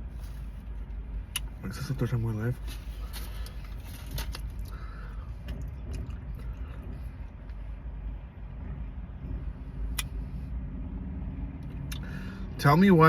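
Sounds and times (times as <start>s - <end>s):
car engine cabin rumble: 0.0s - 13.0s
soft rustles: 2.5s - 4.6s.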